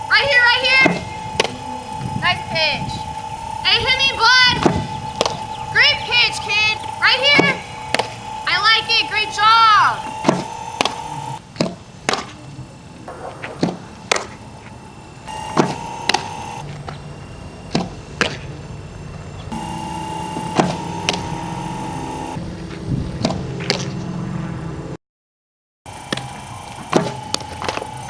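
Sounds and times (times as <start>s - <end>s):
softball cracking on bat or glove: 11.6s - 12.4s, 17.7s - 18.4s.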